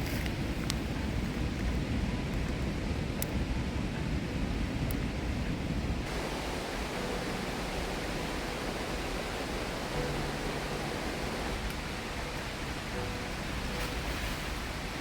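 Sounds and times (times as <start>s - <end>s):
low rumbling noise: 0.0s - 15.0s
waterfall and river rushing: 5.9s - 15.0s.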